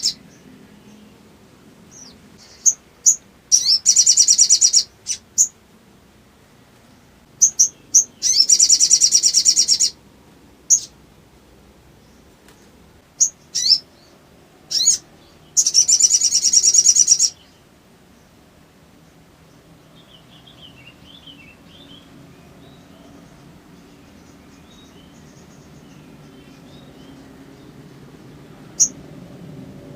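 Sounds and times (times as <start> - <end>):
bird high chirps and trills: 0.0 - 1.1, 1.9 - 5.6, 7.4 - 10.0, 10.7 - 11.0, 12.0 - 18.3, 19.5 - 29.1.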